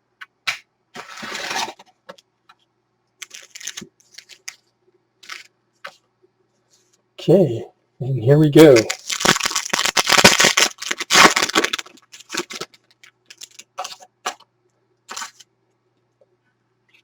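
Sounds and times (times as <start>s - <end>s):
card pack wrapper crinkling and tearing: 1.0s - 1.9s, 3.2s - 4.6s, 5.2s - 5.5s, 8.6s - 14.4s, 15.1s - 15.4s
cards rustling and clicking: 3.2s - 6.0s, 8.6s - 14.4s.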